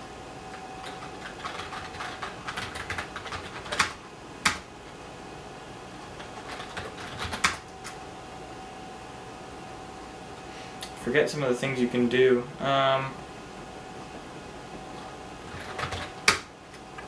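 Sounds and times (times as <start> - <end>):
keyboard typing: 0.8 - 4.6, 6.2 - 8.0, 15.5 - 16.5.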